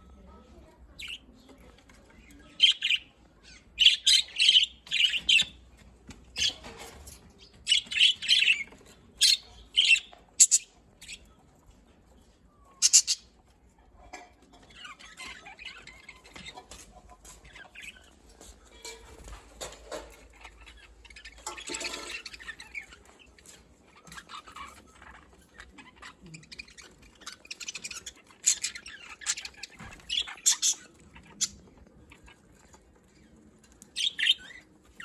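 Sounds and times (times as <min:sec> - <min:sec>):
budgerigars chirping and squawking: 0:01.0 - 0:01.3, 0:02.4 - 0:11.3, 0:12.8 - 0:13.4, 0:14.6 - 0:18.2, 0:19.2 - 0:35.0
budgerigars warbling chatter: 0:02.6 - 0:05.6, 0:07.7 - 0:11.2, 0:12.8 - 0:13.4, 0:20.3 - 0:32.3, 0:34.0 - 0:35.0.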